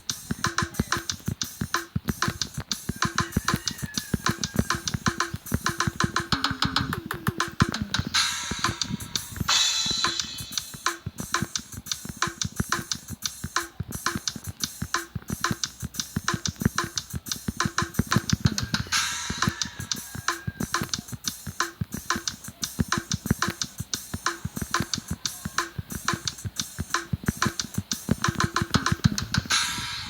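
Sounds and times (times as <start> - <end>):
drum kit playing fast groove: 0.0 - 30.0
cymbal crash: 8.2 - 10.7, 29.5 - 30.0.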